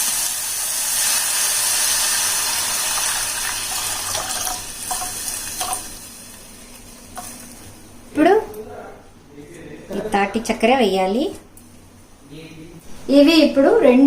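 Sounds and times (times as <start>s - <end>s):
water hissing in hot pot: 0.0s - 6.4s.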